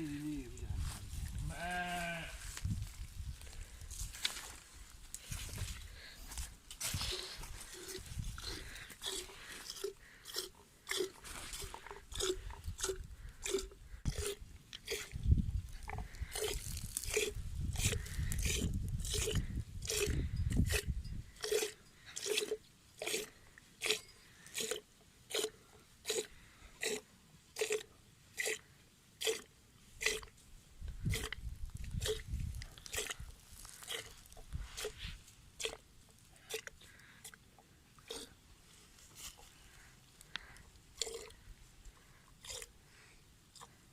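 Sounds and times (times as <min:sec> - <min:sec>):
milk squirting into a container: 0:16.1 - 0:20.1.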